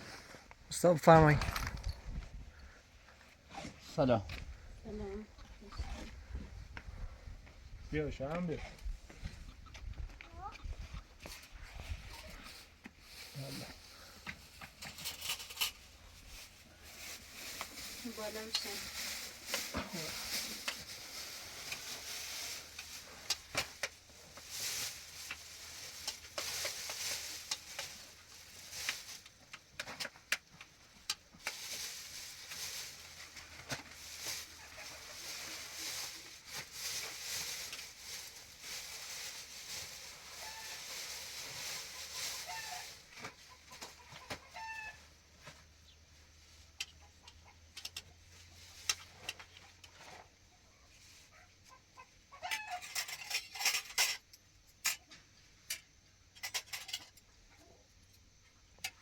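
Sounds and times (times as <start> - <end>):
chickens clucking: 41.6 - 44.9.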